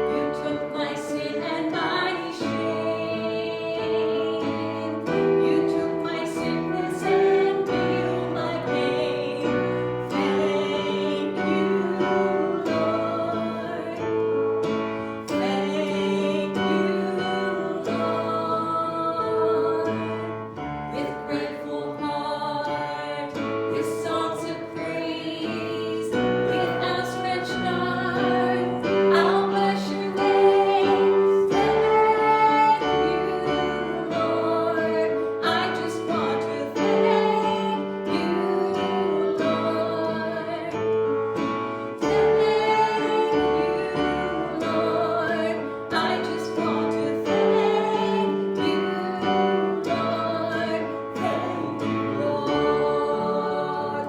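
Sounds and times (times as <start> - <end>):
voices singing worship song: 0.0 - 54.0
instrumental accompaniment: 23.4 - 54.0.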